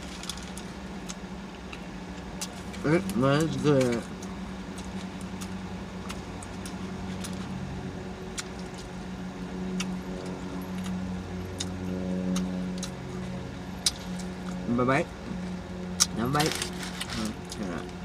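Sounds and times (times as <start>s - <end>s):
chewing and lip smacking: 9.7s - 14.6s.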